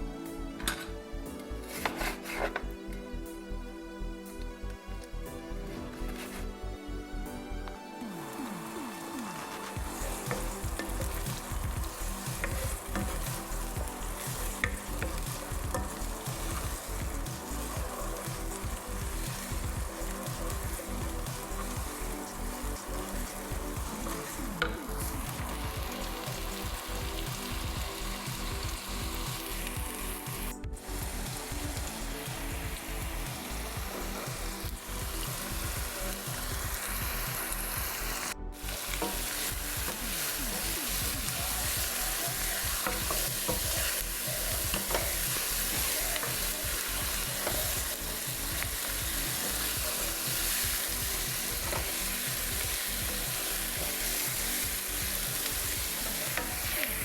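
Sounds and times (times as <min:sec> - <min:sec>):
food sizzling in a pan: 0:01.6 - 0:03.4, 0:05.6 - 0:06.6, 0:08.0 - 0:57.0.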